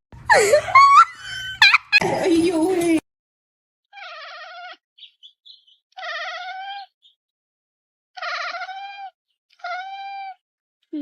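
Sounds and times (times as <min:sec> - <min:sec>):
animal calling: 0:03.9 - 0:07.2, 0:08.2 - 0:10.4.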